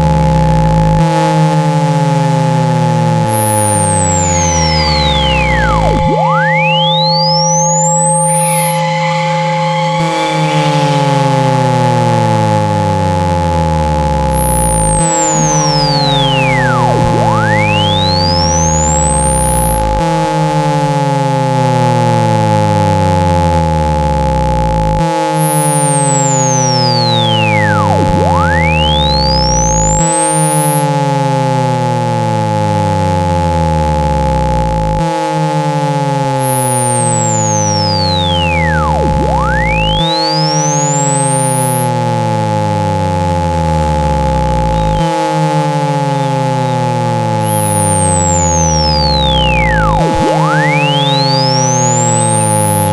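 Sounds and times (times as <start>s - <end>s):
falling pitch sweeps: 0.0s - 22.0s, 23.4s - 52.9s
steady high tones: 0.1s - 21.8s, 23.5s - 52.9s
thin rising whistle: 1.8s - 10.5s, 34.8s - 49.8s.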